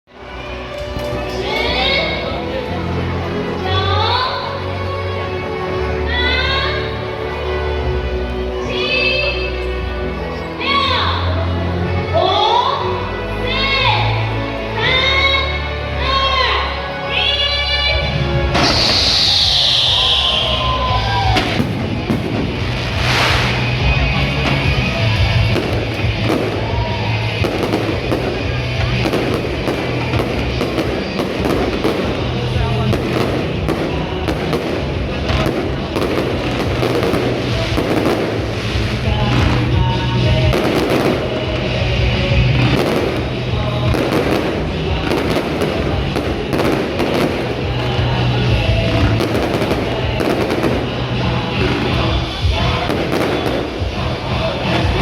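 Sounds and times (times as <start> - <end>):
music playing: 0.0 - 55.0
fireworks crackling and popping: 18.5 - 55.0.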